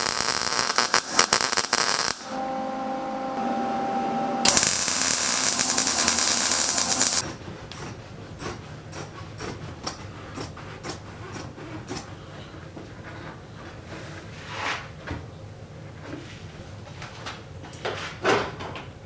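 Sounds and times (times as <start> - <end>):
power tool whining: 0.0 - 7.2.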